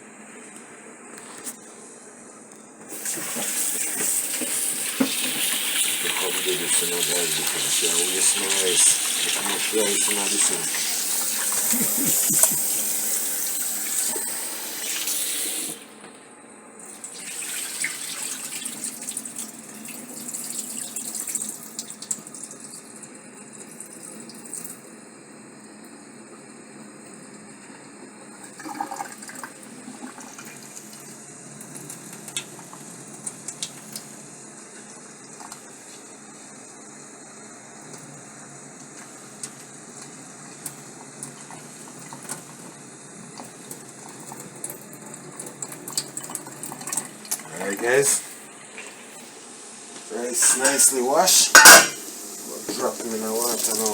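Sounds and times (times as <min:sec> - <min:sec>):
small clicks of rice rinsing: 0:20.4 - 0:24.8, 0:27.0 - 0:36.1, 0:37.8 - 0:38.2, 0:38.8 - 0:47.6.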